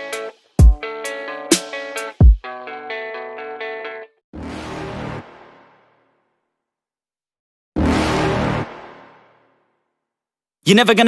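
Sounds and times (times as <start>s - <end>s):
plucked guitar-like melody: 0.0s - 4.2s.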